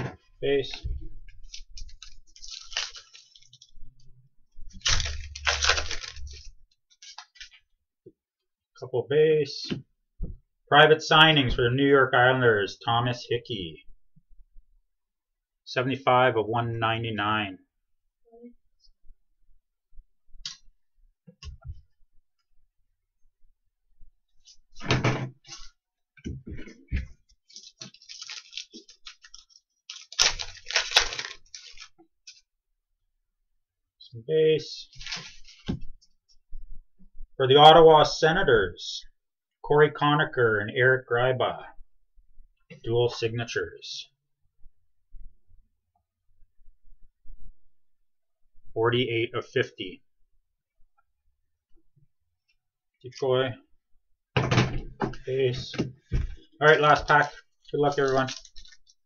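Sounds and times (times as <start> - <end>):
card packs crinkling: 1.4 - 3.7, 4.8 - 7.6, 27.5 - 32.4, 34.9 - 35.6, 56.7 - 59.0
foil wrappers rustling: 1.4 - 3.7, 4.8 - 7.6, 27.5 - 32.4, 56.7 - 59.0.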